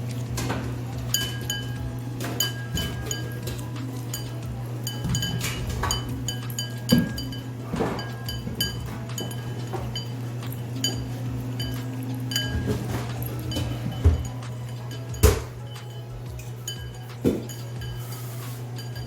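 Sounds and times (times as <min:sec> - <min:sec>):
kibble clinking against bowl: 0:00.1 - 0:19.0.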